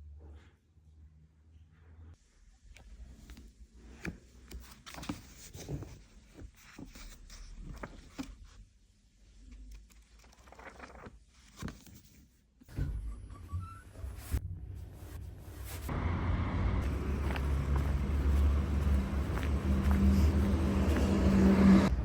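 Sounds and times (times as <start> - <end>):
paper rustling and crinkling: 3.1 - 8.6, 9.2 - 12.4, 16.8 - 21.9.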